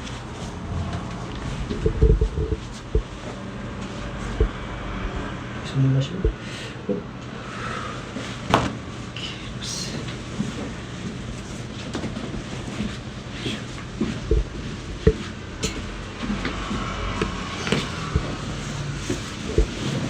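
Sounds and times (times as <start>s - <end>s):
low thuds: 0.6s - 3.2s, 4.3s - 5.4s, 14.3s - 15.2s.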